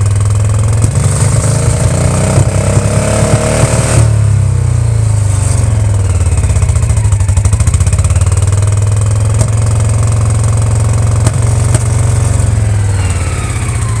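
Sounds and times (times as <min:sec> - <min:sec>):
motorcycle engine stuttering: 0:00.0 - 0:14.0
engine pops: 0:06.2 - 0:14.0.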